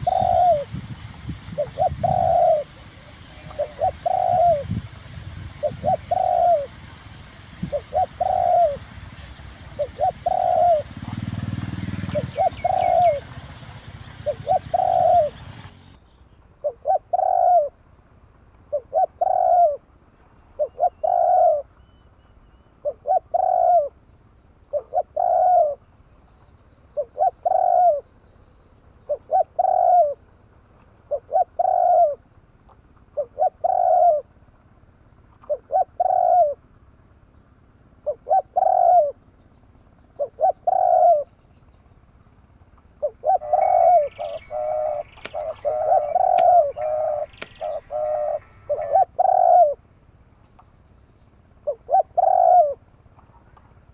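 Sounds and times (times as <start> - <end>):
dove cooing: 0.0 - 16.0, 16.6 - 17.7, 18.7 - 19.8, 20.6 - 21.7, 22.8 - 24.0, 24.7 - 25.8, 27.0 - 28.1, 29.1 - 30.2, 31.1 - 32.2, 33.2 - 34.3, 35.4 - 36.6, 38.0 - 39.2, 40.2 - 41.3, 43.0 - 49.8, 51.6 - 52.8.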